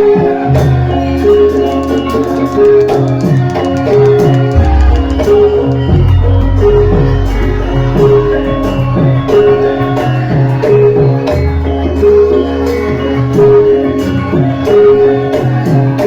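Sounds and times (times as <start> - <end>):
hand drum strokes: 1.6 - 12.8
struck melodic notes: 1.8 - 16.0.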